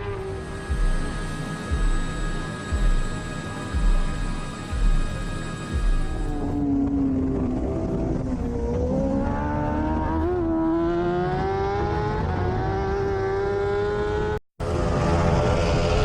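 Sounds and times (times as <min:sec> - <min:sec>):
racing motorcycle engine revving: 0:00.0 - 0:16.0.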